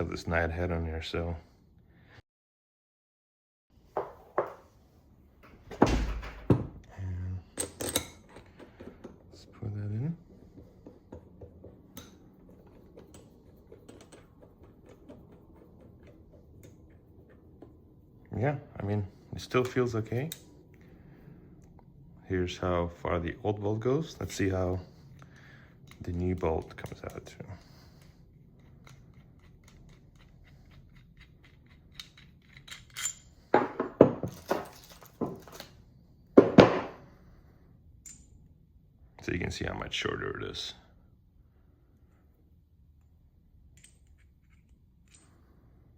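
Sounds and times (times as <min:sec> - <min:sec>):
metallic clinks: 0:38.0 - 0:38.4.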